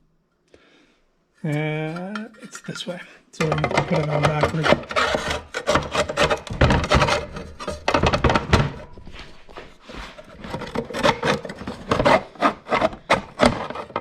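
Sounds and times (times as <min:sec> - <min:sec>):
saw blade knocking and scraping: 0:03.4 - 0:14.0.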